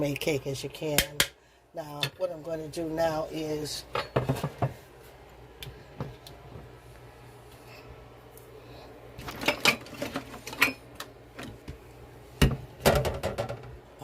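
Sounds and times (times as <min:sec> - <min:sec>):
bowls and utensils clattering: 0:03.9 - 0:04.8, 0:09.2 - 0:10.9.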